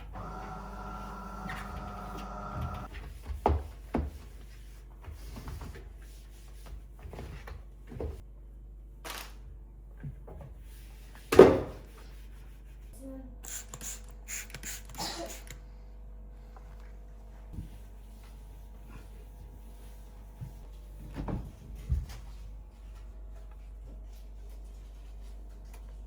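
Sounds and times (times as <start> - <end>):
machine hum: 0.0 - 2.9.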